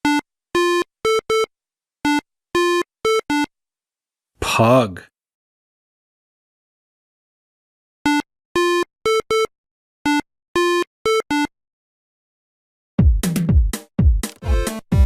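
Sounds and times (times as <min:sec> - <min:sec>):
music with drumbeat: 0:13.0 - 0:15.0.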